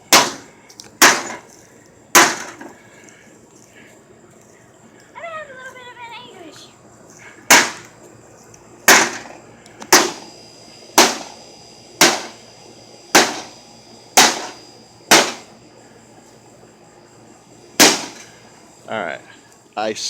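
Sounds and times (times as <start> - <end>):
hammer striking a microwave oven: 0.1 - 1.4, 2.2 - 2.7, 7.5 - 7.9, 8.9 - 10.3, 10.9 - 11.4, 12.0 - 12.4, 13.1 - 15.5, 17.8 - 18.3.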